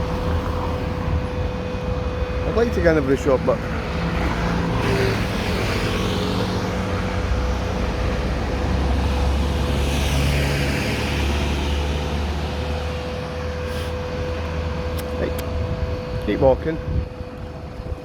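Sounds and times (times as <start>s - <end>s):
vehicle passing: 0.0s - 1.6s, 2.5s - 13.6s
street traffic rumble: 0.0s - 18.0s.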